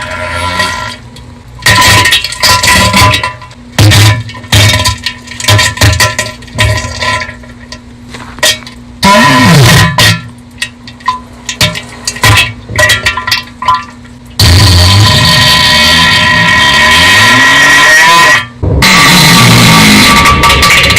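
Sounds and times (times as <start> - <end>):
distorted wet splattering bursts: 11.4 - 20.9.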